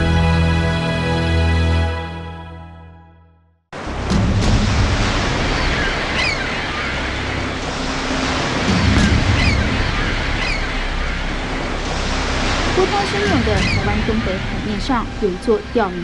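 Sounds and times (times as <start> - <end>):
waves breaking: 3.8 - 16.0.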